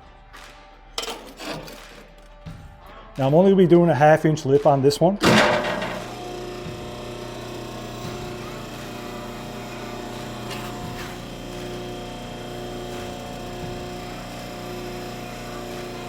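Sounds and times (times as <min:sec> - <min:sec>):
electrical hum: 0:05.2 - 0:16.0.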